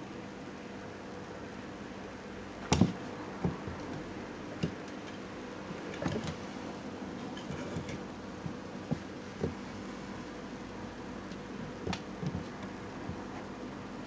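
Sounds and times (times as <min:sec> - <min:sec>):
steady low hum: 0:00.0 - 0:14.0
kittens knocking and tapping: 0:02.7 - 0:04.8, 0:07.4 - 0:09.6, 0:11.6 - 0:13.3.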